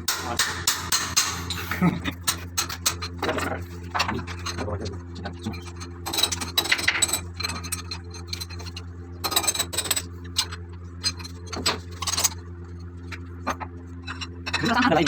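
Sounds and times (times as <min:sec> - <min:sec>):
low machinery hum: 0:00.0 - 0:15.0
metal tools clinking and scraping: 0:01.4 - 0:12.4, 0:13.0 - 0:15.0.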